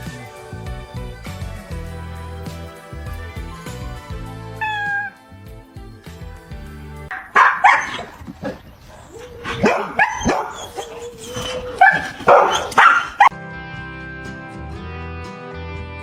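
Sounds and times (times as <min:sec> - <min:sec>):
dog barking: 0:07.1 - 0:13.3.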